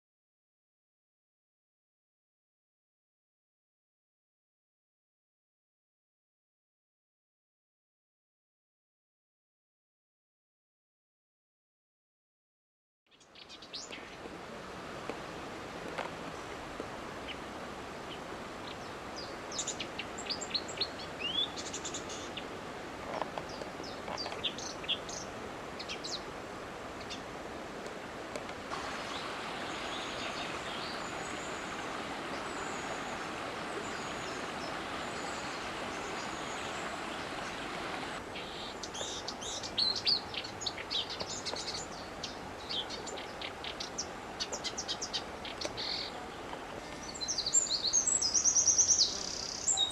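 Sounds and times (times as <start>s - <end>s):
wild birds chirping: 13.1s - 14.6s, 16.0s - 27.3s, 28.7s - 49.9s
background hiss: 13.1s - 49.9s
steady rushing noise: 25.4s - 38.3s.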